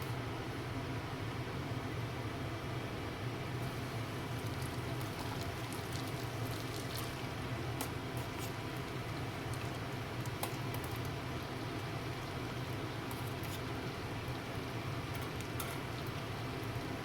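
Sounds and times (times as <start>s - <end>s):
food sizzling and bubbling: 3.6s - 17.0s.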